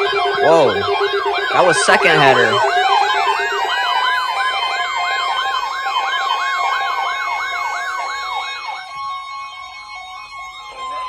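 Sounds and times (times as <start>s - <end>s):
siren yelping: 0.0s - 3.5s
steady siren tone: 0.0s - 11.0s.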